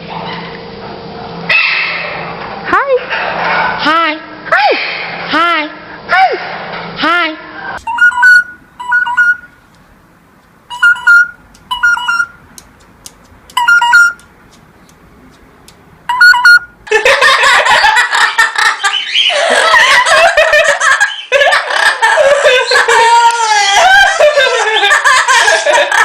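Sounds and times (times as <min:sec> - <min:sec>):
loud laughter: 0:16.9 - 0:26.0.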